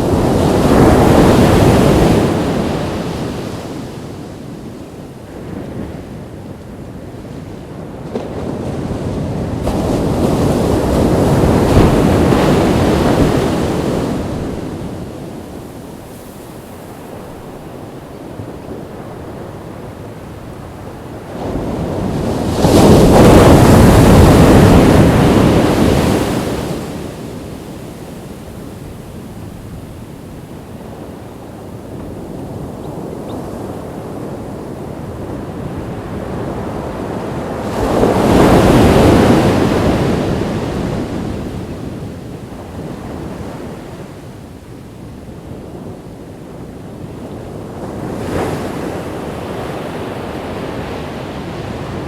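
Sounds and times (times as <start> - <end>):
ocean waves crashing: 0.0 - 45.1, 47.1 - 52.0.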